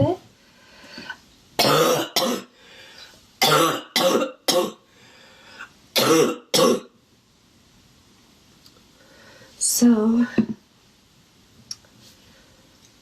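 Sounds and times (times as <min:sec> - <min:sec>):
woman coughing: 0:01.6 - 0:02.5, 0:03.4 - 0:04.8, 0:06.0 - 0:06.9.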